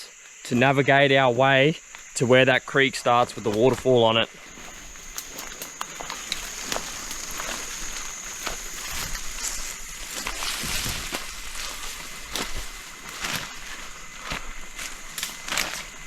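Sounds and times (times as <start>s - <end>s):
leaves rustling: 0.1s - 16.0s
footsteps through undergrowth: 1.8s - 16.0s
twigs snapping: 3.4s - 16.0s.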